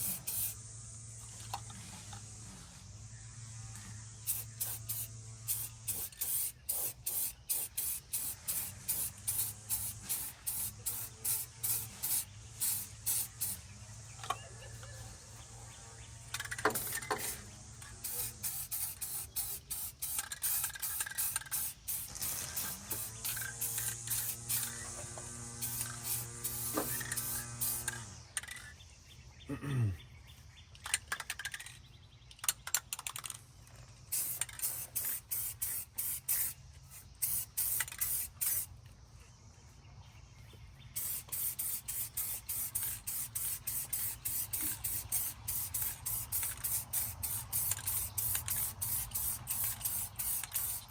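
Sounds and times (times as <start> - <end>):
spray paint can spraying: 0.0 - 0.6, 3.8 - 28.6, 34.0 - 38.8, 40.9 - 50.9.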